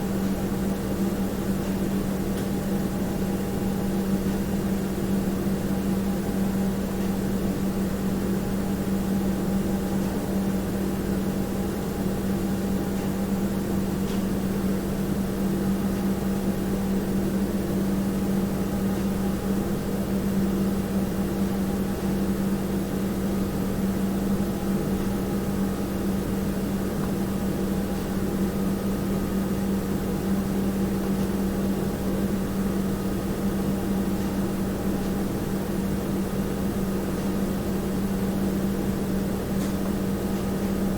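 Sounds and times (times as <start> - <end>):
mechanical hum with low drone: 0.0 - 40.9.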